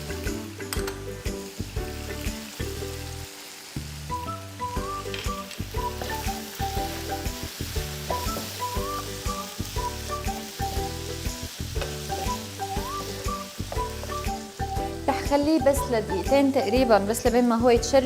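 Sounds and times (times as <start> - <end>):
chicken sizzling in hot oil: 0.0 - 17.9
background music: 0.0 - 18.0.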